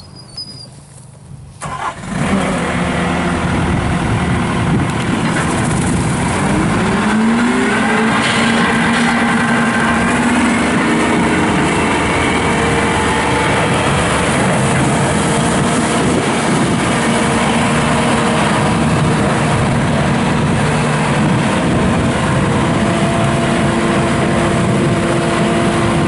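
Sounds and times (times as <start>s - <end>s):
diesel engine starting and running: 0.0s - 26.0s.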